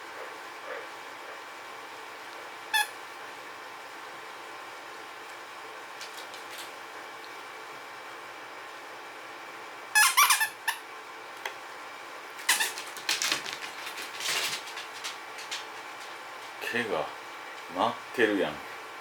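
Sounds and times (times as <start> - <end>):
squeaky toy squeaking: 10.0 - 10.8
rustling and scuffling: 12.4 - 16.9.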